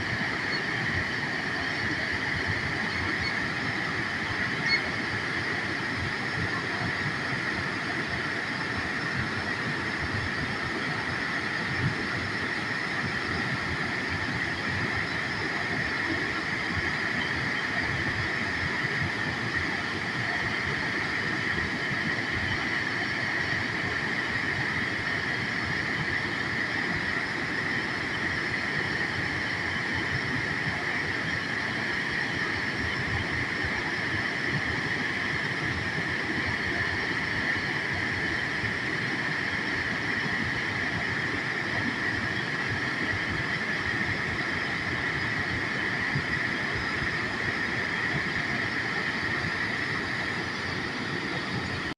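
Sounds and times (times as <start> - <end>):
waterfall rushing and splashing: 0.0 - 51.9.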